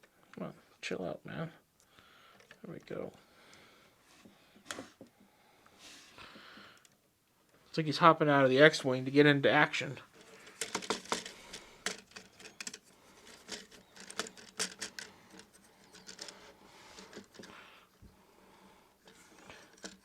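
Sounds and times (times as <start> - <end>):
soft rustle: 5.7 - 6.4
plastic bricks clicking: 10.2 - 17.6, 19.1 - 20.0.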